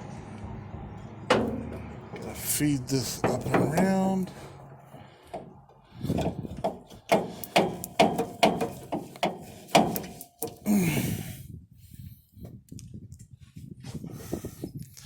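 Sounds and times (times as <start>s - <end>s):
sharp metallic knocks: 1.3s - 2.2s, 3.0s - 4.3s, 5.2s - 10.6s
person grunting with effort: 10.6s - 11.3s.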